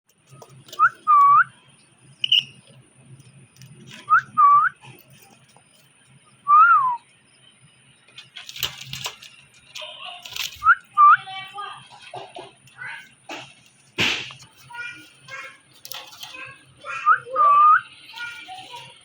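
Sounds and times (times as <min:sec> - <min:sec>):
parrot whistling: 0:02.2 - 0:02.6, 0:04.1 - 0:04.8, 0:06.5 - 0:07.0.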